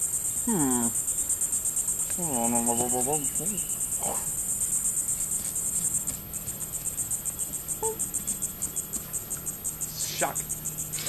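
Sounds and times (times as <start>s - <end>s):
crickets chirping: 0.0s - 11.0s
person humming: 0.5s - 1.0s, 7.8s - 8.0s.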